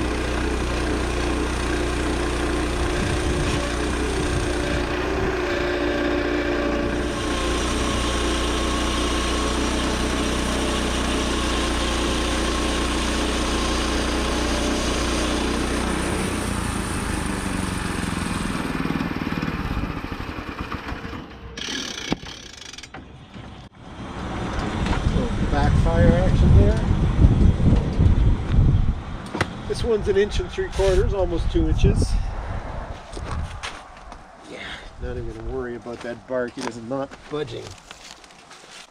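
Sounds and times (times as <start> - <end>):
band blade sawing through log: 0.0 - 17.5
gas engine running: 0.0 - 22.9.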